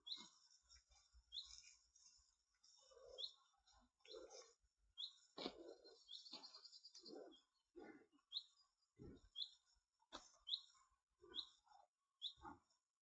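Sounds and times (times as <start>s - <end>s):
small bird chirping: 0.0s - 2.1s, 3.0s - 7.6s, 8.2s - 12.6s
cattle chewing: 0.0s - 6.7s.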